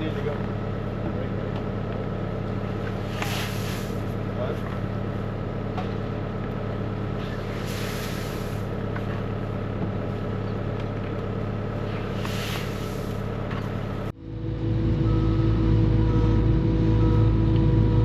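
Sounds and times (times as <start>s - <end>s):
vehicle engine idling: 0.0s - 18.0s
hiss: 3.1s - 4.0s, 7.6s - 8.6s, 12.2s - 13.2s
louder engine: 13.9s - 18.0s.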